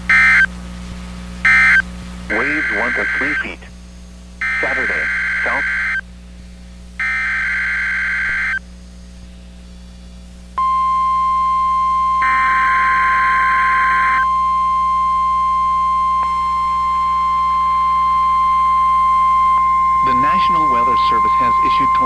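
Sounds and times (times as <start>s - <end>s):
steady warning alarm tone: 0.1s - 0.5s, 1.4s - 3.7s, 4.4s - 6.0s, 7.0s - 8.6s, 10.6s - 22.0s
warbling digital data bursts: 20.0s - 22.0s.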